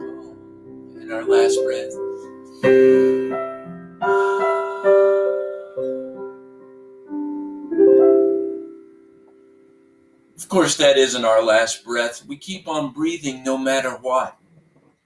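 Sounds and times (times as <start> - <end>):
slow piano chords: 0.0 - 10.4.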